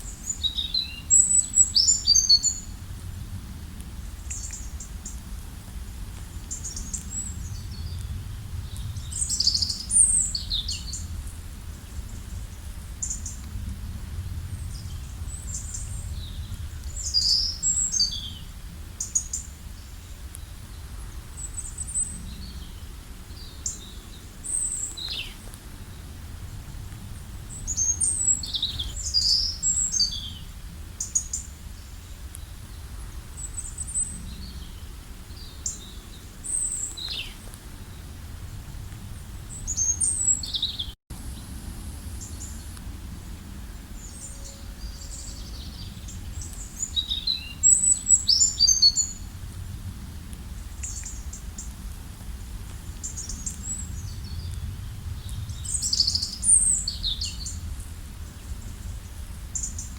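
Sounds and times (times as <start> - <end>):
songbirds chirping and trilling: 0.0 - 3.2, 4.0 - 5.4, 6.2 - 13.6, 14.3 - 38.2, 39.1 - 49.6, 50.2 - 59.9
faint low rumble: 0.0 - 59.9.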